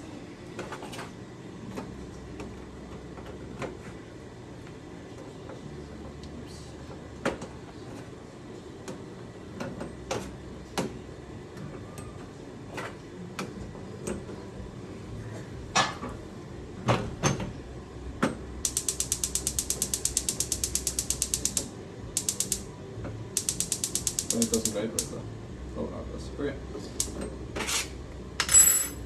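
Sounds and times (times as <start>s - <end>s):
gas igniter clicking: 18.6s - 22.7s, 23.4s - 25.2s, 26.9s - 27.2s.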